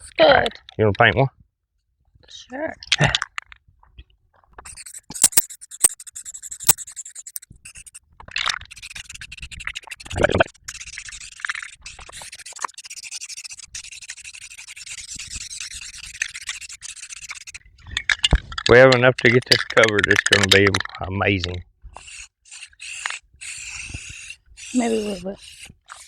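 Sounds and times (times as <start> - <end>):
paintbrushes scratching cardboard: 4.7 - 8.0, 8.7 - 17.6, 22.0 - 26.0
sharp clicks: 4.8 - 7.4.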